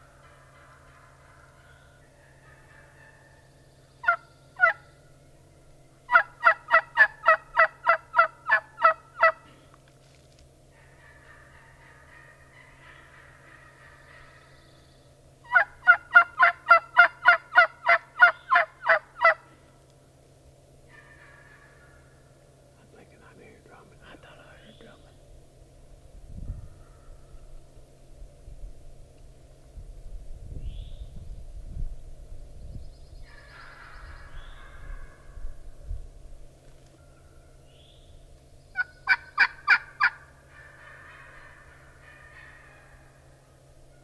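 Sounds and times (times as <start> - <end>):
turkey yelping: 0.1 - 4.9, 6.1 - 9.5, 10.8 - 14.5, 15.4 - 19.5, 20.9 - 22.3, 38.7 - 44.0.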